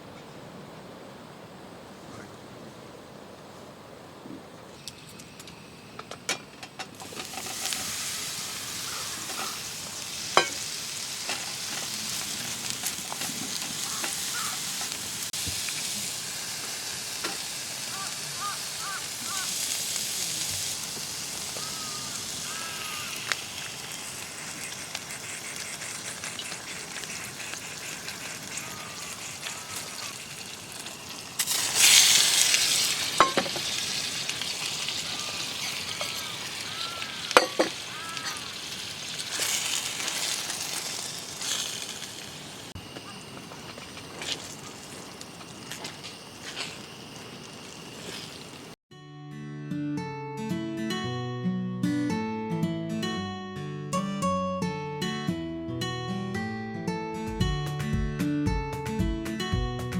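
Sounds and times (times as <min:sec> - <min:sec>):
food sizzling in a frying pan: 0:07.0 - 0:48.8.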